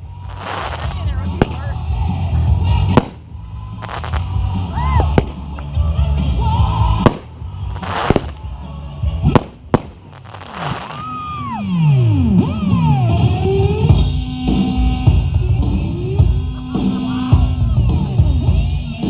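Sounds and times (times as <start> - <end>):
hissing crackle bursts: 0.0 - 1.6, 3.8 - 4.4, 7.1 - 8.4, 9.3 - 11.1
music with heavy bass: 0.0 - 19.0
fireworks bangs: 0.1 - 2.0, 2.7 - 5.8, 6.9 - 8.6, 9.2 - 11.2
firework whistle: 9.3 - 11.3.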